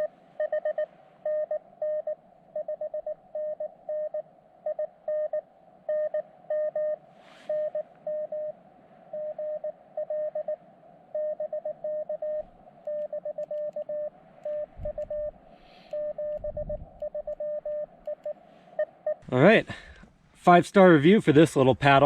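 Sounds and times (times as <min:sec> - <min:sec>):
morse code tone: 0:00.0 - 0:08.6, 0:09.2 - 0:19.2
brief hiss: 0:07.2 - 0:07.6.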